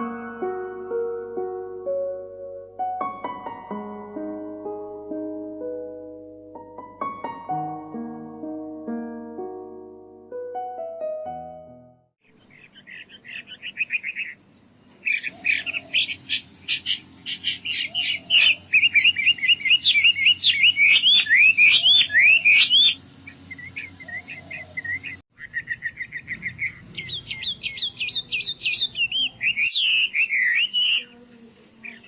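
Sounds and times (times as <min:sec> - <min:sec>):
birds chirping and trilling: 0:12.2 - 0:32.0.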